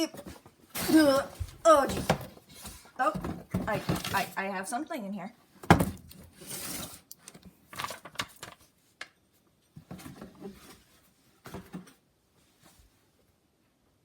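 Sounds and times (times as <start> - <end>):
cardboard packaging rustling: 5.8 - 8.8.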